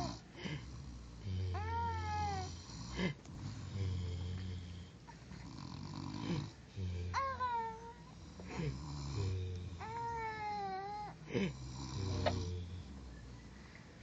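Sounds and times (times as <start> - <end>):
man snoring: 0.0 - 7.6, 8.2 - 13.1
baby cooing: 1.6 - 2.5, 7.2 - 8.2, 9.8 - 11.2.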